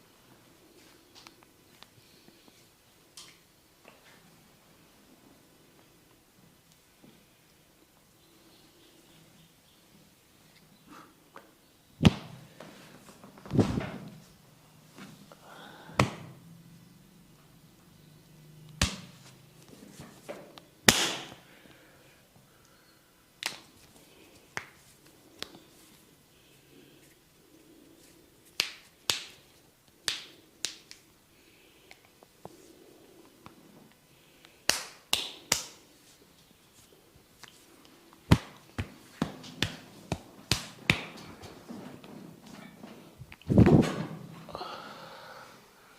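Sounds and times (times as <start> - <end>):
sharp hand smacks: 18.7 - 19.1, 20.9 - 21.4, 23.4 - 23.7, 28.5 - 29.4, 30.1 - 31.0, 34.7 - 35.8, 38.3 - 41.2.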